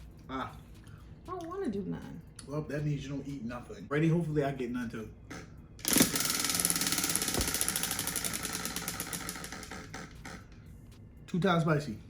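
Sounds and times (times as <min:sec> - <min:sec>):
prize wheel clicking: 0:05.8 - 0:10.4.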